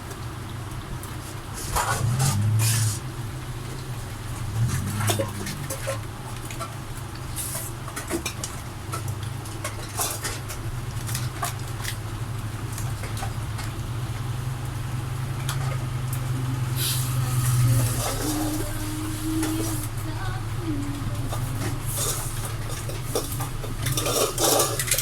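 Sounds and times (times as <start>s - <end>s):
puppies clicking and scuffling: 0.0s - 16.7s, 17.4s - 25.0s
steady low hum: 1.6s - 7.2s, 12.2s - 25.0s.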